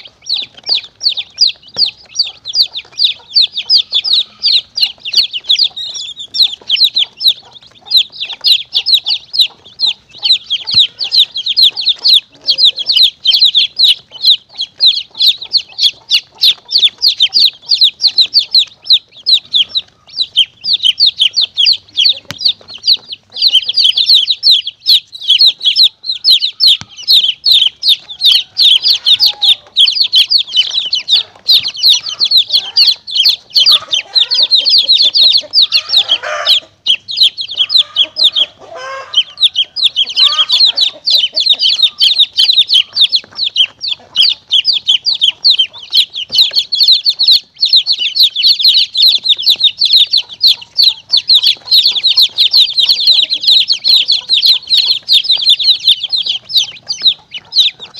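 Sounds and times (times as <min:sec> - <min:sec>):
baby chicks peeping: 0:00.0 - 0:57.9.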